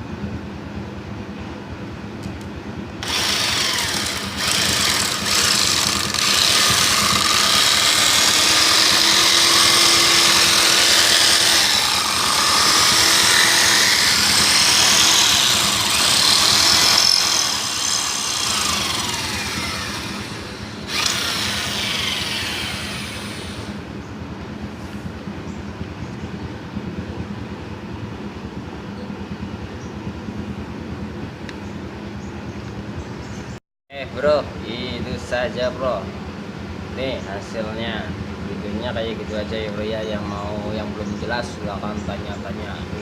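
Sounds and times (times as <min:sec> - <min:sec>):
electric drill spinning wooden stick: 0:03.0 - 0:23.8
wood scraping as it is shaved: 0:03.1 - 0:23.6.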